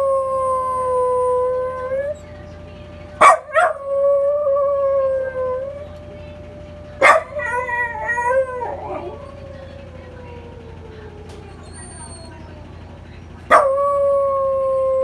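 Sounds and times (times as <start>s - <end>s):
dog howling: 0.0s - 2.3s, 3.2s - 6.1s, 6.8s - 12.6s, 13.5s - 15.0s
faint steady siren: 0.0s - 15.0s
dog yelping: 3.2s - 3.8s, 7.0s - 10.4s, 11.2s - 12.4s, 13.5s - 13.9s.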